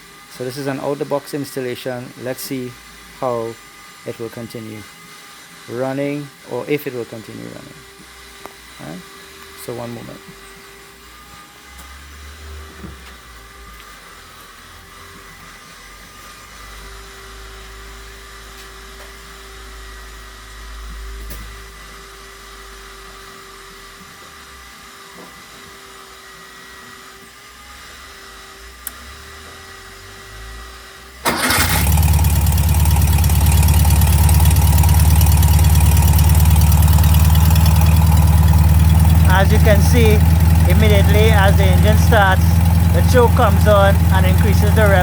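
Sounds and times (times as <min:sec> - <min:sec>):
car engine starting and idling: 0:31.2 - 0:45.0.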